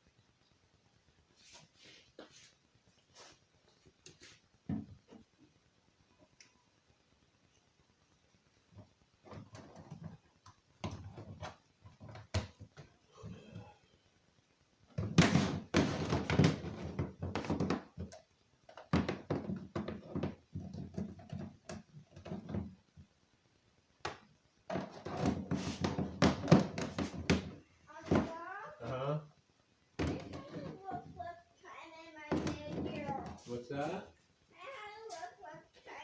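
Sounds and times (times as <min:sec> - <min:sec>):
objects handled by hand: 0:08.7 - 0:13.8, 0:14.9 - 0:23.2, 0:24.0 - 0:28.5, 0:30.0 - 0:31.4, 0:32.3 - 0:36.0.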